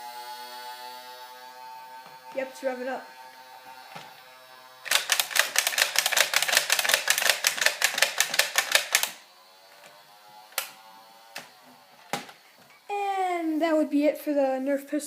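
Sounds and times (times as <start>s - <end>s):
toy blaster clicking rapidly: 4.8s - 9.2s.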